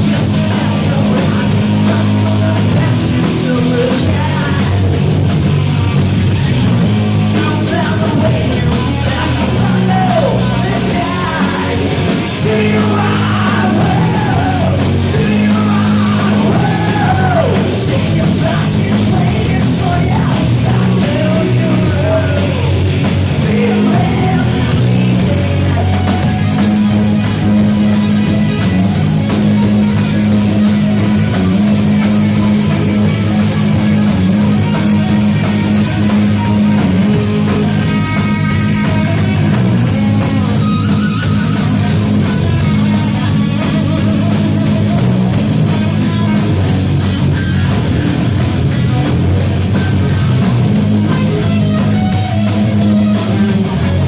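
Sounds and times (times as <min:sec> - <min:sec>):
sung or shouted vocals: 0:00.0 - 0:05.3, 0:07.0 - 0:26.2
loud rock music: 0:00.0 - 0:54.0.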